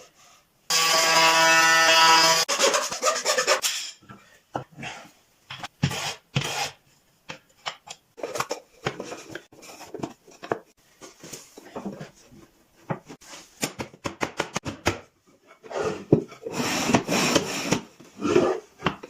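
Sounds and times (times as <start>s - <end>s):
hand rasp scraping wood: 2.2s - 3.6s.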